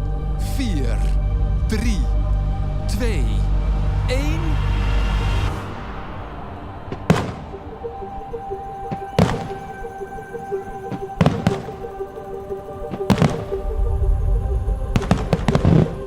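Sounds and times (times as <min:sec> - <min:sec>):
music with long held tones: 0:00.0 - 0:16.0
firework bangs: 0:06.9 - 0:07.7, 0:09.0 - 0:09.7, 0:13.0 - 0:13.7.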